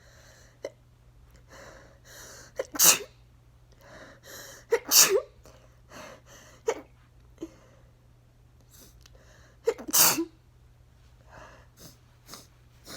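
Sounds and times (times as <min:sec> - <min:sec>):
person sneezing: 0:02.6 - 0:03.1, 0:04.7 - 0:05.3, 0:09.7 - 0:10.3.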